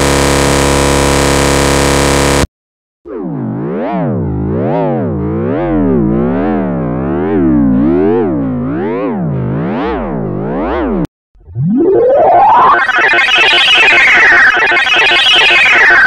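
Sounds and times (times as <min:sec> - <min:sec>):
wobbling electronic tone: 0:04.2 - 0:16.0.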